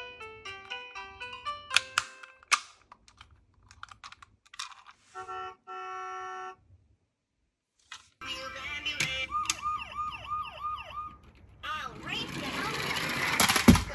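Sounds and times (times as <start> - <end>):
electronic beeps: 8.3 - 11.2.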